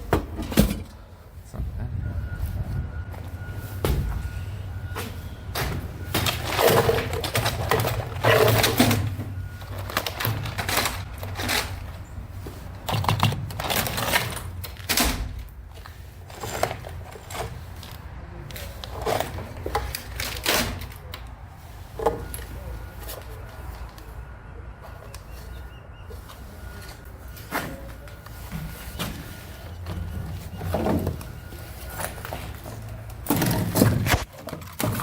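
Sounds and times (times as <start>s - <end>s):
junk clattering in dumpster: 0.0s - 24.0s, 24.9s - 35.0s
steady low rumble: 1.3s - 5.5s.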